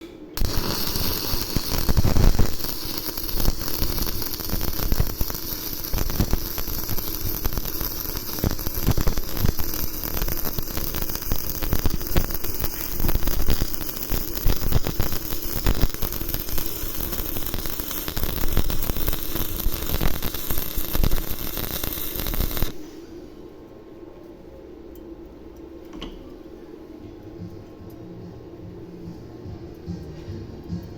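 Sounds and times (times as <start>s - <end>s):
faint steady hum: 0.0s - 30.9s
electric arc welding crackling: 0.4s - 22.9s.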